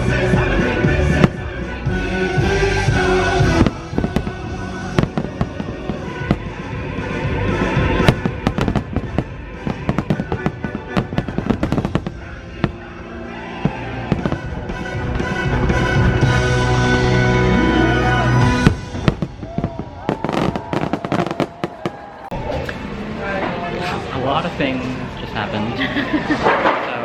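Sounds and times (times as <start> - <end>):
loud show music: 0.0 - 21.2
fireworks bursting and crackling: 2.4 - 16.5, 18.4 - 22.3.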